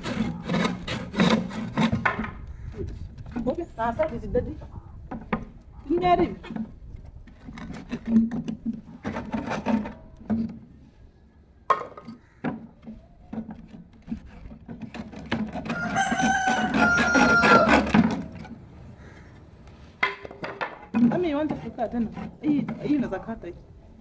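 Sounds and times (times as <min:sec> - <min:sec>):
rooster crowing: 0:15.6 - 0:18.2.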